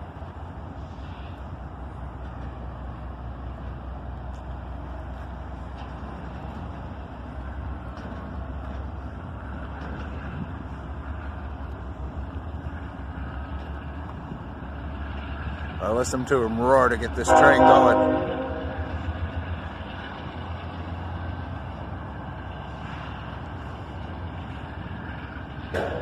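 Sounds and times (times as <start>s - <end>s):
diesel locomotive engine rumble: 0.0s - 26.0s.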